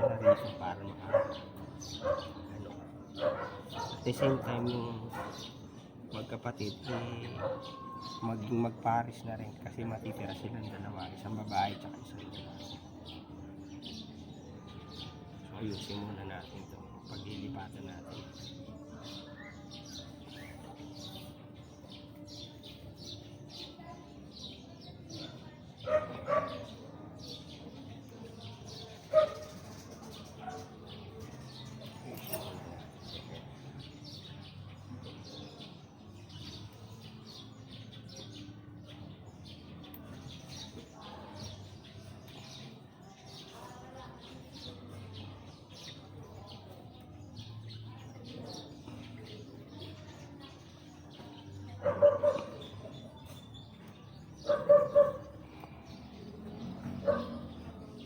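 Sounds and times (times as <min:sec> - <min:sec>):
dog barking: 0:00.0 - 0:05.6, 0:06.8 - 0:08.0, 0:25.8 - 0:26.8, 0:29.1 - 0:29.6, 0:51.8 - 0:52.9, 0:54.4 - 0:55.4, 0:56.8 - 0:57.7
small birds chirping: 0:00.0 - 0:58.0.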